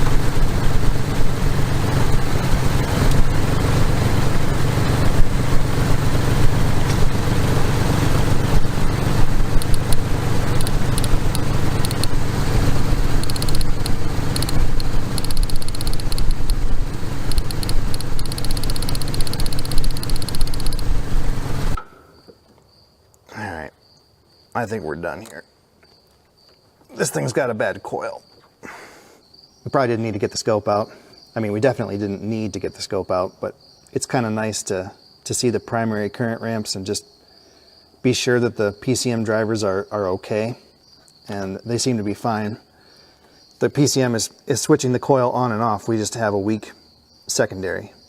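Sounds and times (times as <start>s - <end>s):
sharp spark clicks: 0.0s - 3.5s, 4.2s - 21.8s
engine running with misfire: 0.0s - 21.9s.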